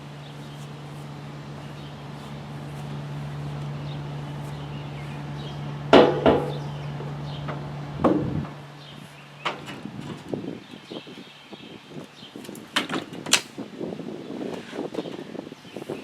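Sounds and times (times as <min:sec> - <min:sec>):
low hum: 0:00.0 - 0:10.8
sharp knocks: 0:05.9 - 0:06.7, 0:07.4 - 0:08.6.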